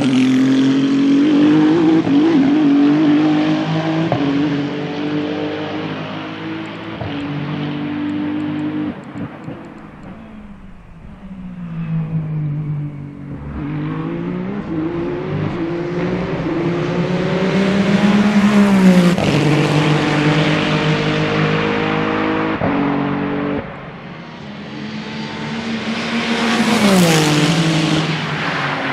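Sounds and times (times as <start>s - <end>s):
race car engine accelerating: 0.0s - 28.9s.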